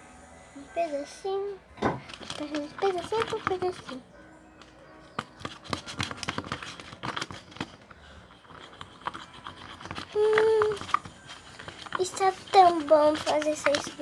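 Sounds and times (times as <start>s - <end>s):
child humming: 10.0s - 11.2s.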